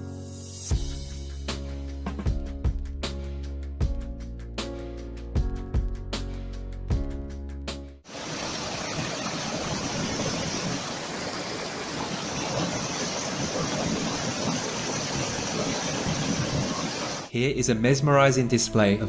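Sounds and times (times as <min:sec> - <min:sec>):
music: 0:00.0 - 0:08.1, 0:17.3 - 0:19.0
steady rushing noise: 0:08.1 - 0:17.3.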